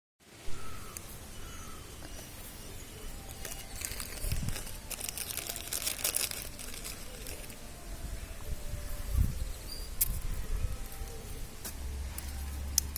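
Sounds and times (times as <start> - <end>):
puppies rustling and crinkling: 3.3 - 7.6.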